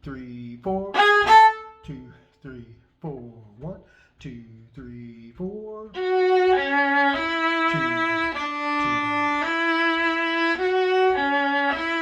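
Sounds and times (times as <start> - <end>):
viola playing slow melody: 0.9 - 1.9, 6.0 - 12.0.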